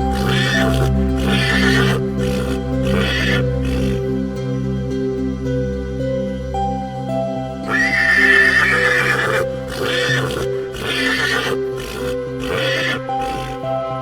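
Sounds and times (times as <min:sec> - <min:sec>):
horse whinnying: 0:00.0 - 0:04.1, 0:07.7 - 0:13.7.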